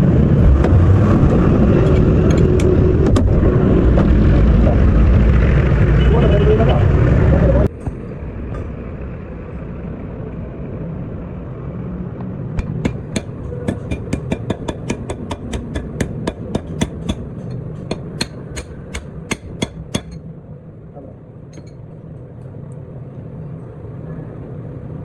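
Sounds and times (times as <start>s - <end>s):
steady low rumble: 0.0s - 25.0s
hammer striking metal: 12.6s - 20.2s, 21.5s - 21.8s.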